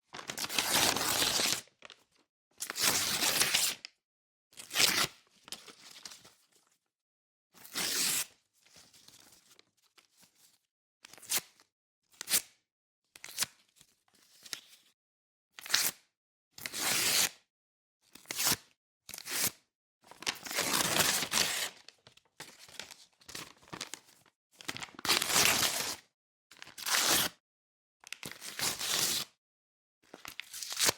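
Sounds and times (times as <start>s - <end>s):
pages tearing out of book: 0.2s - 1.6s, 20.2s - 21.8s, 24.7s - 26.0s, 26.7s - 27.3s.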